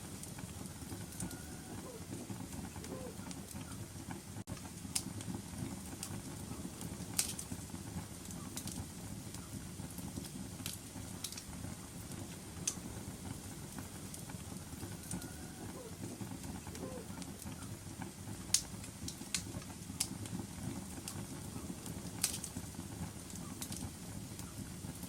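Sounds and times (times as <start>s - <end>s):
fire crackling pops: 0.0s - 25.0s
fire flames rumbling: 0.0s - 25.0s.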